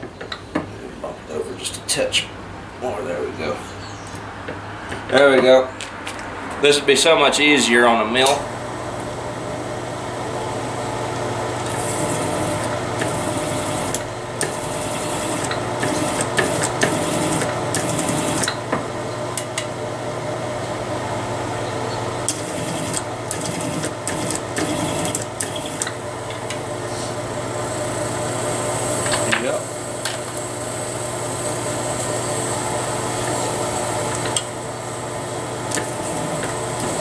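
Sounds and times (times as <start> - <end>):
motor hum: 8.0 - 37.0
cutter scraping metal: 10.4 - 18.7, 22.3 - 27.2, 35.6 - 37.0.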